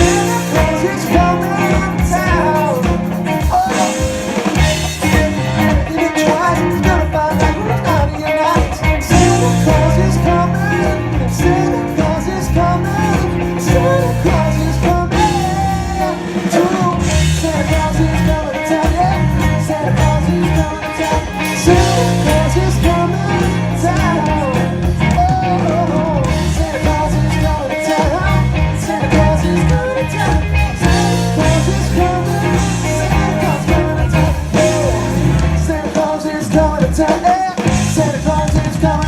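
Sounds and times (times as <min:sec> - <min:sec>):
lead singer singing: 0:00.0 - 0:39.0
live rock band playing: 0:00.0 - 0:39.0.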